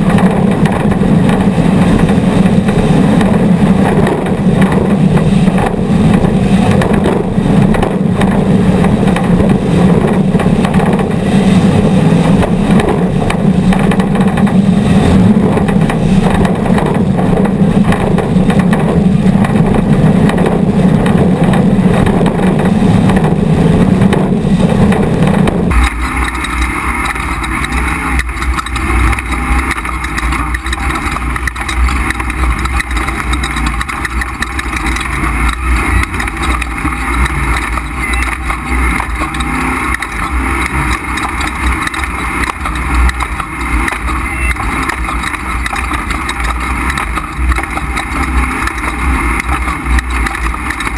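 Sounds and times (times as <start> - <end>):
deeper engine rumble with hiss: 0.0 - 50.9
race vehicle engine running hard: 0.0 - 50.9.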